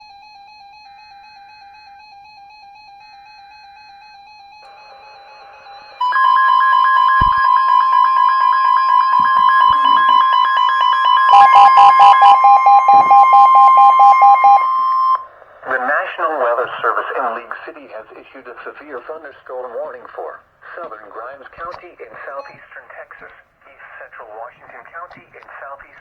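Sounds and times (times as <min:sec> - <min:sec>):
faint steady tones: 0:03.8 - 0:21.1
warning alarm tone: 0:04.6 - 0:15.3
pulsing alarm beep: 0:04.7 - 0:15.3.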